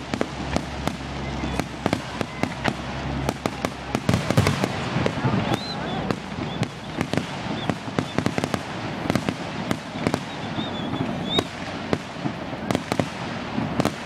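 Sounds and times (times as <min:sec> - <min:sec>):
fireworks bangs and cracks: 0:00.0 - 0:14.0
rumble of fireworks explosions: 0:00.0 - 0:14.0.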